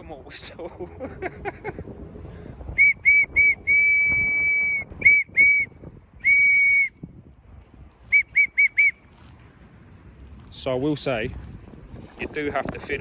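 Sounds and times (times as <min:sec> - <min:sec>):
stick whistle toots: 0:02.8 - 0:07.0, 0:08.1 - 0:09.0.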